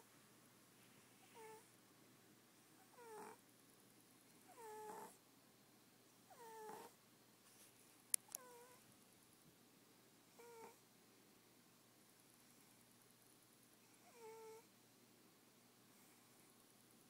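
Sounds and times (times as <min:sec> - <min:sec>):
cat snoring with whistles: 0:02.9 - 0:03.4, 0:04.5 - 0:05.2, 0:06.3 - 0:07.0
sharp clicks: 0:08.1 - 0:08.5.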